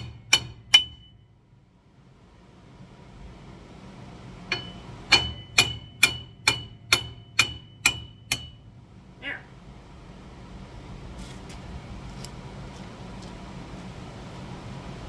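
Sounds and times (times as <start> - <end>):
hammer striking metal: 0.0 - 1.2, 4.5 - 8.7.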